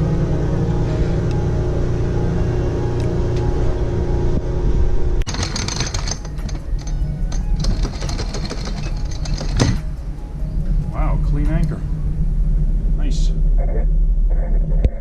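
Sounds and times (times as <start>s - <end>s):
anchor clunk: 5.3s - 10.0s
anchor chain rattling: 5.3s - 10.2s.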